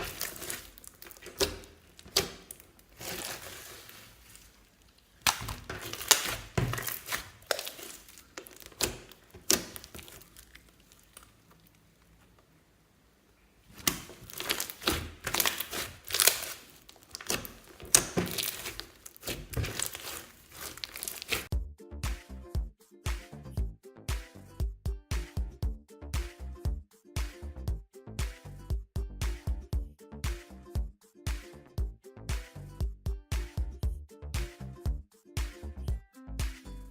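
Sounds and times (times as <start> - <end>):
slime crackling and popping: 0.0 - 11.8, 13.7 - 21.5.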